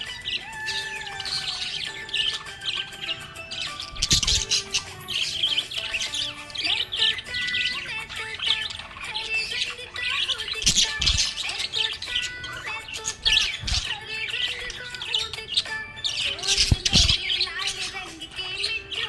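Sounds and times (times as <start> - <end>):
budgerigar chirping: 0.0 - 19.0.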